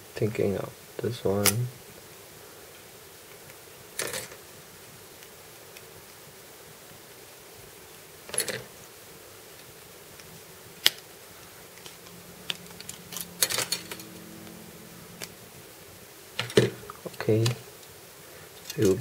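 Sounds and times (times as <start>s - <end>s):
plastic parts clicking: 8.3s - 8.6s, 11.8s - 14.1s, 16.4s - 17.6s, 18.5s - 19.0s.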